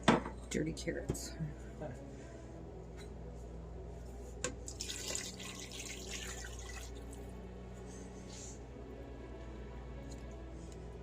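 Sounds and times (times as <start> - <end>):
water running from a tap: 4.7 - 7.1.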